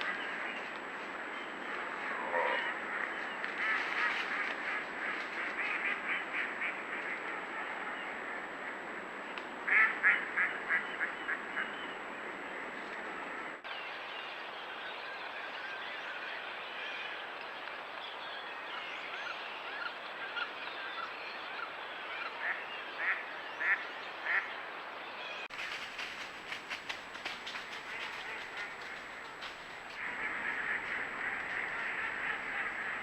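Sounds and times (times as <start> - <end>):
steady outdoor hiss: 0.0 - 33.0
ducks chattering softly: 27.5 - 33.0
ducks quacking: 27.6 - 33.0.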